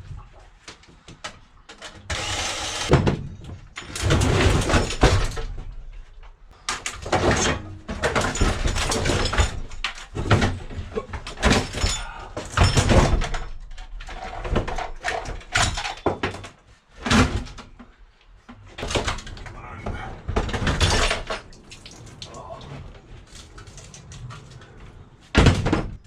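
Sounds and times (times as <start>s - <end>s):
knocks bangs and clatter: 2.8s - 6.0s, 6.8s - 17.8s, 18.6s - 21.5s, 25.3s - 26.0s.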